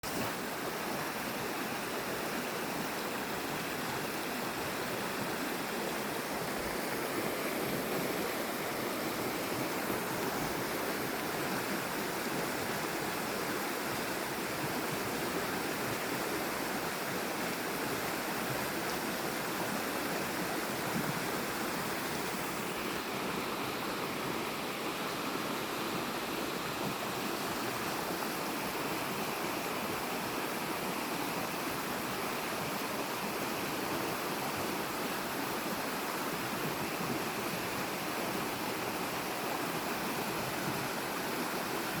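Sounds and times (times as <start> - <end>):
waterfall rushing: 0.1 - 30.8.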